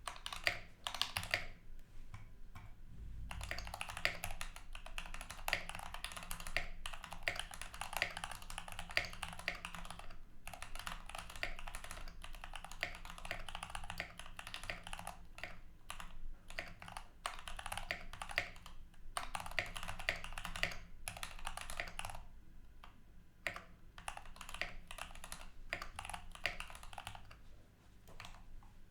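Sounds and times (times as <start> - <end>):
mechanical keyboard typing: 0.0 - 1.6, 3.3 - 27.4, 28.2 - 28.4.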